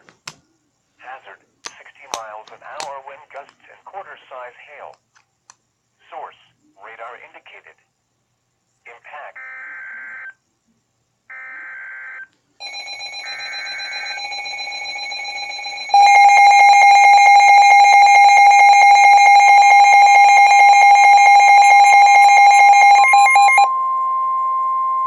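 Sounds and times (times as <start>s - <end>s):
pulsing electronic alarm tone: 12.6s - 25.0s.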